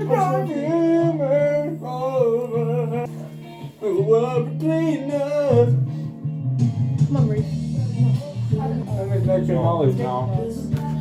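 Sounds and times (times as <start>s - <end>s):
guitar: 0.0s - 11.0s
person singing: 0.0s - 11.0s.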